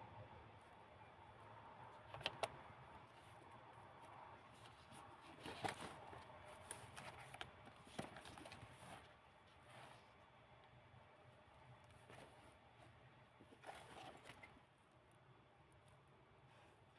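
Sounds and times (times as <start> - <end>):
paper pages rustling: 4.5 - 9.7.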